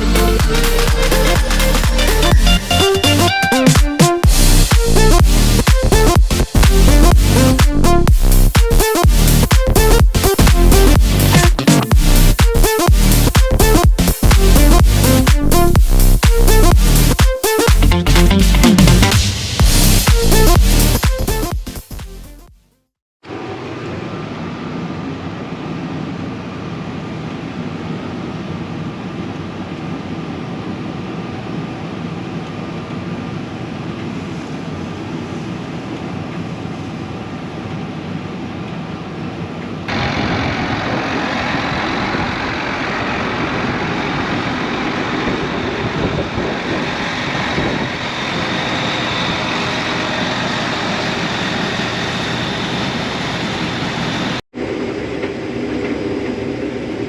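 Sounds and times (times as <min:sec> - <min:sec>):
combine harvester running: 0:39.9 - 0:57.0.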